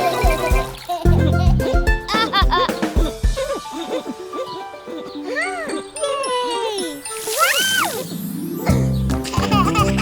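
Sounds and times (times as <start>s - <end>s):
steady drum beat: 0.2s - 3.5s.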